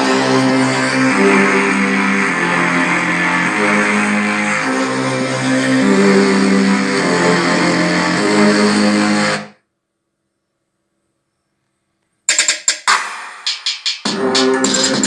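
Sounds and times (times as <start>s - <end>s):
punchy beat hits: 12.3s - 15.0s.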